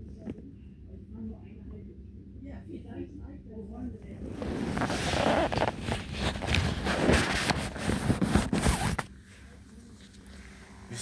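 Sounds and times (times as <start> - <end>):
rustling and scraping handling noise: 4.0 - 10.8.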